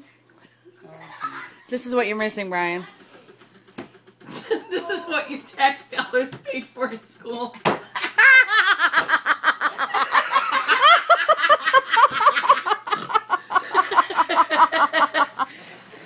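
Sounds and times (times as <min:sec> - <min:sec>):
women laughing: 0:04.3 - 0:05.3, 0:08.0 - 0:15.5.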